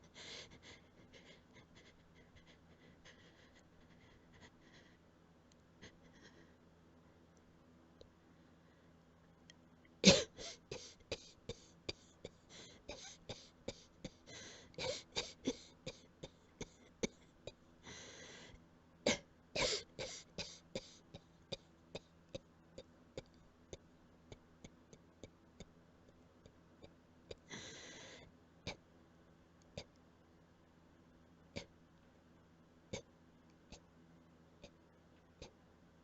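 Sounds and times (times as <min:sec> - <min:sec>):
person coughing quietly: 0:10.0 - 0:17.6, 0:19.1 - 0:22.1.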